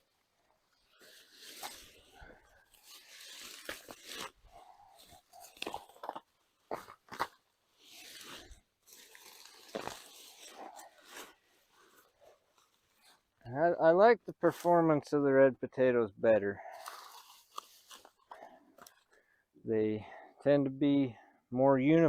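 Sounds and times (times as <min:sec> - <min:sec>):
hay rustling and crunching: 0:01.0 - 0:05.6, 0:07.8 - 0:13.1.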